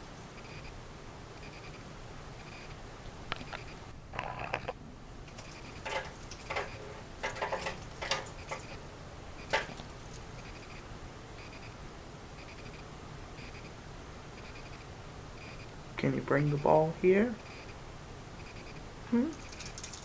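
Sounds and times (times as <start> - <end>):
cat rattle ball toy rattling: 5.3 - 8.8, 19.3 - 20.0.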